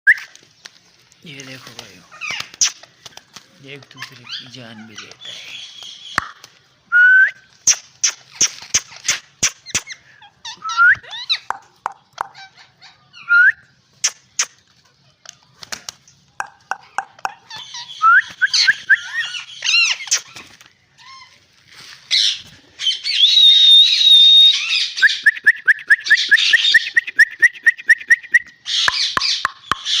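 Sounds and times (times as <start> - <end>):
parrots squawking and whistling: 7.1 - 14.6, 16.5 - 21.4, 22.1 - 30.0.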